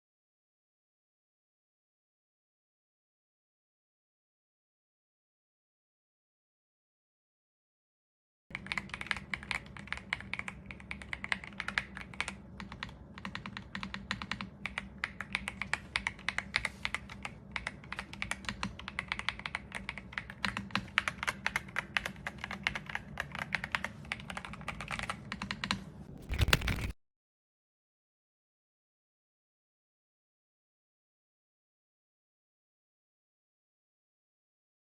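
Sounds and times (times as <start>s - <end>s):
mechanical keyboard typing: 8.5s - 27.0s.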